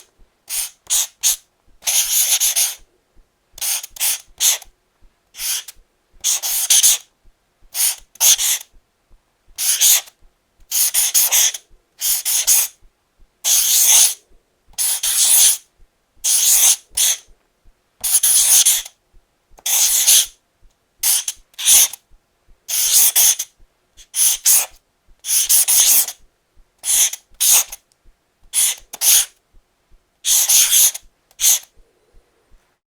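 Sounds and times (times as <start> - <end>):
marker scratching on paper: 0.0 - 2.9, 3.6 - 4.7, 5.4 - 7.1, 7.7 - 8.7, 9.6 - 10.1, 10.7 - 12.7, 13.5 - 14.2, 14.8 - 15.6, 16.2 - 17.3, 18.0 - 18.9, 19.6 - 20.4, 21.0 - 22.0, 22.7 - 26.2, 26.8 - 27.8, 28.5 - 29.4, 30.3 - 31.7.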